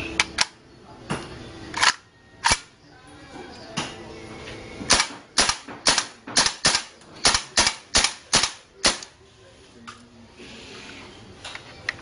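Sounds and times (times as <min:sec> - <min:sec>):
airsoft gun shots: 0:04.9 - 0:09.1.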